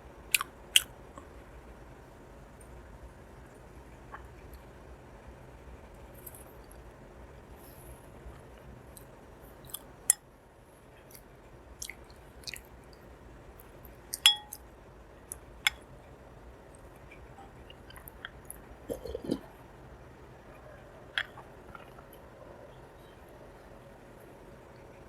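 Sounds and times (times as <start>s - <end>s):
wet chewing mouth sounds: 17.5s - 19.6s, 21.2s - 22.2s.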